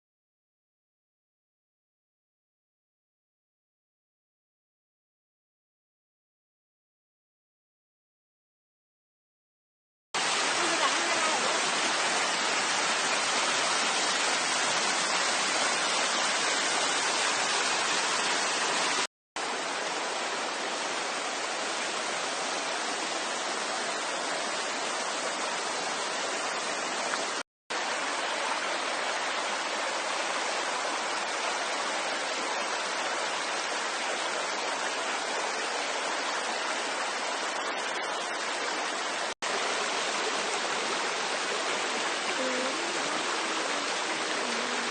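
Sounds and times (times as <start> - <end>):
small waterfall rushing: 10.2 - 44.9.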